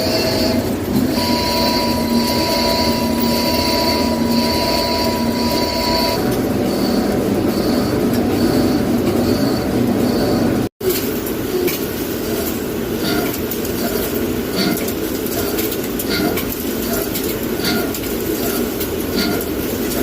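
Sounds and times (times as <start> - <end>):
short high-pitched tones: 0.0 - 6.2
loud mechanical noise: 0.0 - 20.0.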